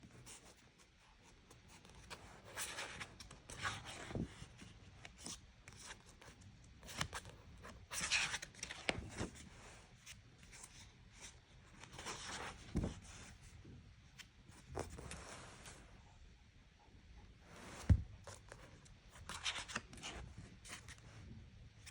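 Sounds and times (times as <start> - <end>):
rustling and rubbing: 7.6 - 13.8, 14.4 - 16.0.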